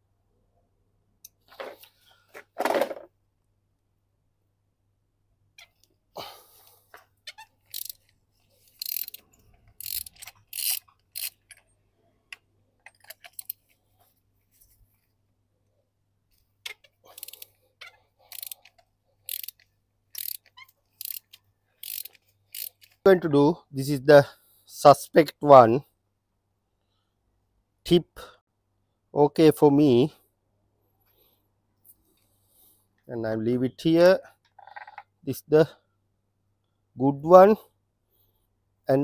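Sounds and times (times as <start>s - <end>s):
ratchet wrench clicking: 7.7s - 8.1s, 8.7s - 11.6s, 12.8s - 13.6s, 17.1s - 17.5s, 18.2s - 23.0s.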